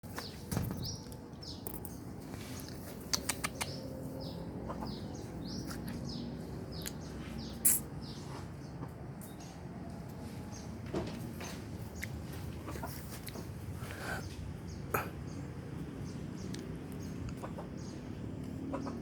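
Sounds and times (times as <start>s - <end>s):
chicken peeping: 2.5s - 9.6s, 16.4s - 19.0s
quick clicks: 3.0s - 3.8s.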